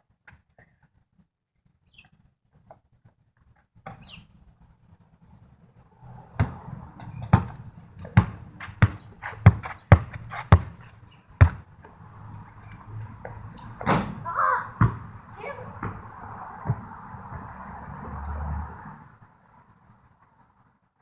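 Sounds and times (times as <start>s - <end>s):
basketball bouncing: 6.4s - 10.8s, 11.4s - 11.7s, 14.8s - 17.5s.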